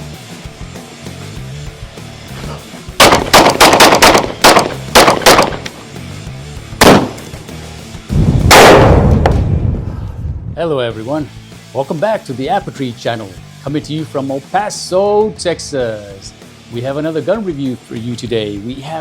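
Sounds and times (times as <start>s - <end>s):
rock music: 0.0s - 9.6s, 10.7s - 19.0s
gunshots: 3.0s - 5.7s, 6.8s - 7.4s, 8.5s - 9.5s
heavy blast: 3.0s - 5.7s, 6.8s - 7.4s, 8.1s - 10.6s.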